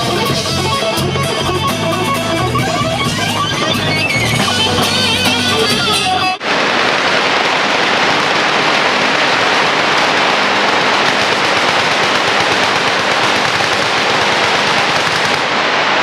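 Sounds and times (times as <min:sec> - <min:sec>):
machine guns firing: 0:07.5 - 0:15.7.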